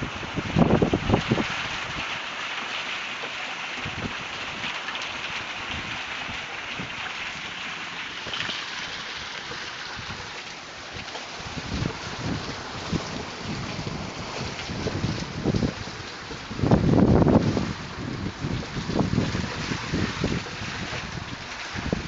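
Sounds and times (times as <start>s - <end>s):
wind buffeting microphone: 0.0s - 2.1s, 11.0s - 22.0s
heavy rain pouring: 0.0s - 22.0s.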